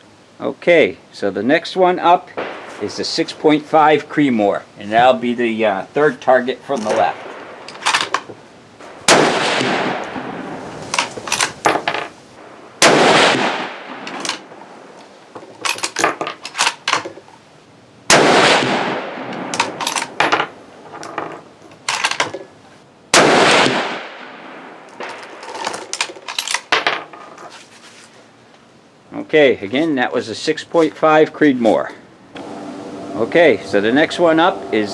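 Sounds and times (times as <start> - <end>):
rifle shots echoing: 2.4 - 4.0, 6.7 - 14.8, 18.1 - 20.6, 23.1 - 25.4
rifle bolt metallic clicks: 6.7 - 8.3, 10.8 - 11.9, 14.0 - 14.5, 15.5 - 17.2, 18.1 - 22.4, 25.0 - 26.8.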